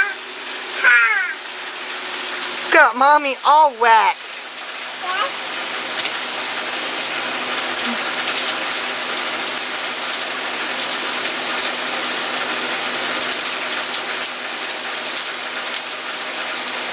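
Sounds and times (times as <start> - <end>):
steady rain hiss: 0.0 - 16.9.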